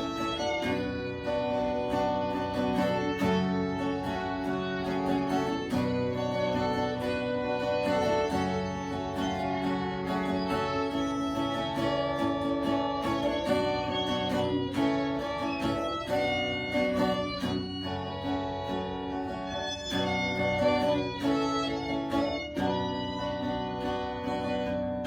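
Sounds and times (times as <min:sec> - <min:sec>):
acoustic guitar strumming: 0:00.0 - 0:25.0
violin melody: 0:00.0 - 0:25.0.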